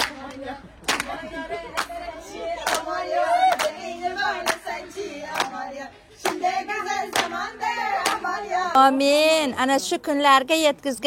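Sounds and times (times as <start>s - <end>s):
hand claps: 0.0s - 2.0s, 2.6s - 3.8s, 4.4s - 5.6s, 6.2s - 7.4s
voices singing: 0.0s - 9.5s.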